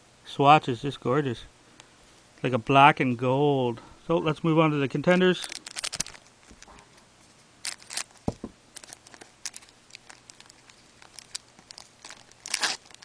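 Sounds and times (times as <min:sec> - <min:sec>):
card pack wrapper crinkling: 0:05.0 - 0:06.8, 0:07.6 - 0:13.0.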